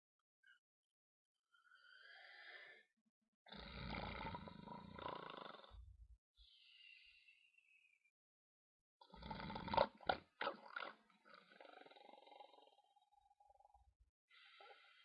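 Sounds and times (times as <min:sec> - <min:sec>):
whistling breath: 0:01.6 - 0:02.9, 0:06.4 - 0:08.1
man snoring: 0:03.5 - 0:05.8, 0:09.0 - 0:10.0.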